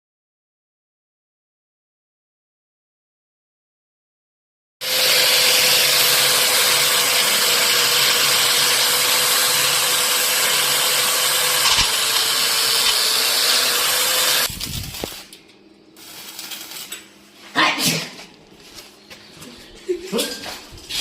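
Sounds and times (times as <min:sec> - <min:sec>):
power tool whining: 0:04.8 - 0:15.2.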